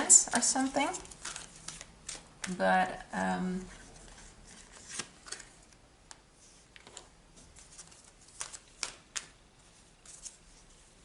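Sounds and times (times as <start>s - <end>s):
cards flicking and tapping: 8.3s - 9.4s.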